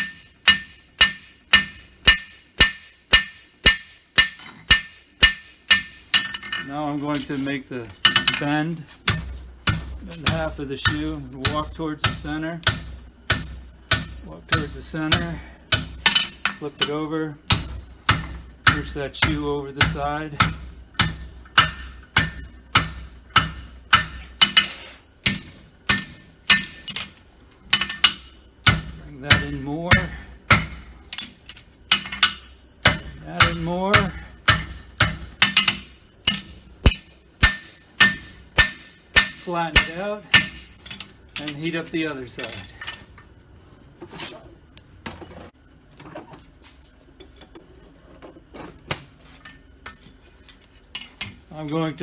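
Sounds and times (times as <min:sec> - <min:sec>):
hammer striking horseshoe on anvil: 0:00.0 - 0:07.3, 0:08.0 - 0:43.0
sharp metal clank: 0:00.0 - 0:07.3, 0:08.0 - 0:41.6
metal tools clinking and knocking: 0:00.0 - 0:22.6, 0:23.3 - 0:37.9, 0:38.6 - 0:43.3.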